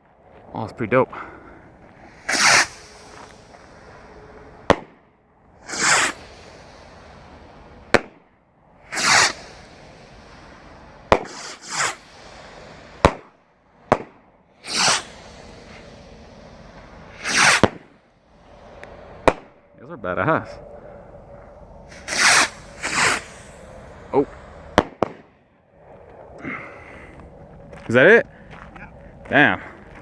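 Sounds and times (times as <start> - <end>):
firework rocket whoosh: 1.2 - 27.7
firework bang: 1.8 - 8.2, 8.8 - 19.6, 21.8 - 25.5.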